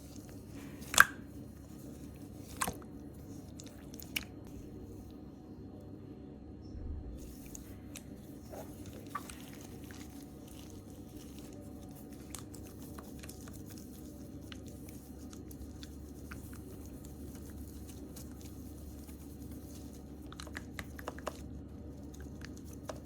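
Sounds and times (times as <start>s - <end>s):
slime squishing wet clicks: 0.9s - 1.2s.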